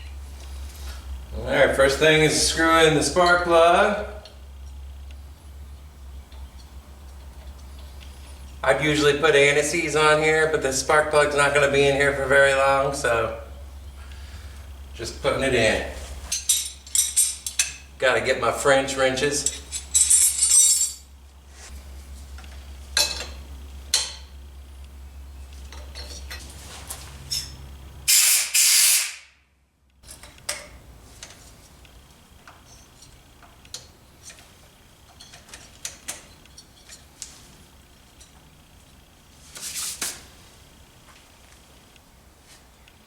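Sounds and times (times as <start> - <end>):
metal hand tools clinking: 19.4 - 21.1
short hissing bursts: 28.1 - 29.3.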